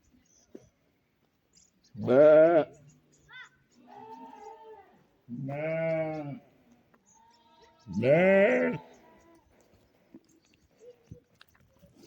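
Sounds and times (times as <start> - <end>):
sheep bleating: 2.0 - 2.8, 3.8 - 6.4, 7.2 - 9.4.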